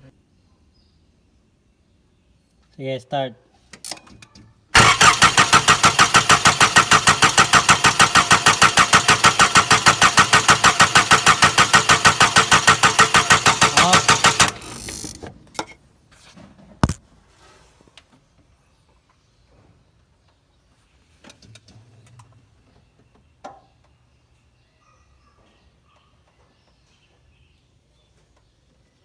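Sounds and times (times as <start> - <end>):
starter motor cranking engine: 4.8 - 15.2.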